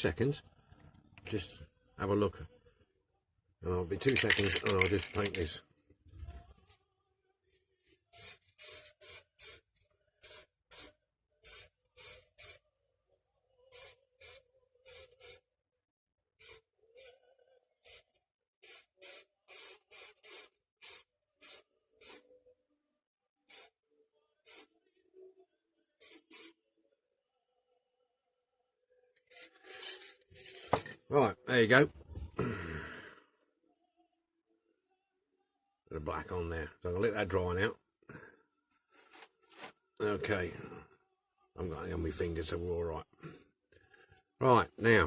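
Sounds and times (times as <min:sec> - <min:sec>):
spray paint hissing in bursts: 0:08.1 - 0:12.6, 0:13.7 - 0:15.5, 0:16.4 - 0:17.2, 0:17.8 - 0:22.2, 0:23.5 - 0:23.7, 0:24.4 - 0:24.7, 0:26.0 - 0:26.6.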